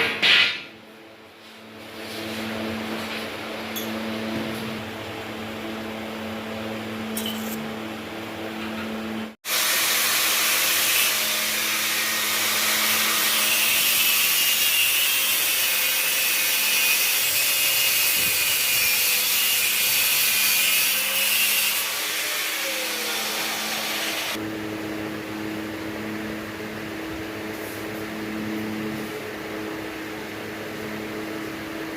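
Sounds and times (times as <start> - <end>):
low machine hum: 24.4 - 31.9.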